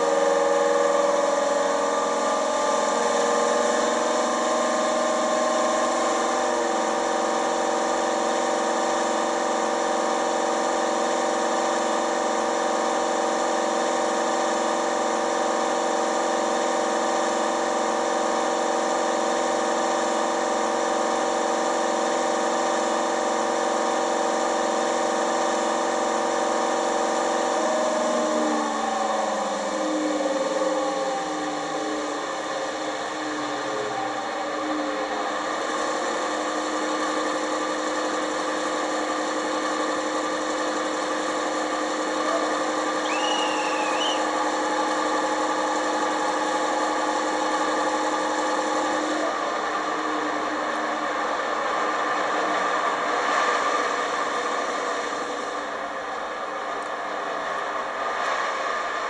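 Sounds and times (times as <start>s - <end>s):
diesel engine sound from small speaker: 0.0s - 58.1s.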